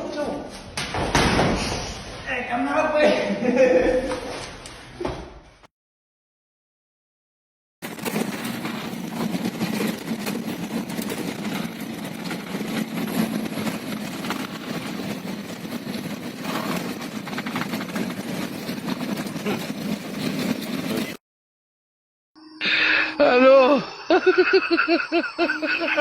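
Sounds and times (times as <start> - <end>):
knocks and clatter: 7.8 - 21.2.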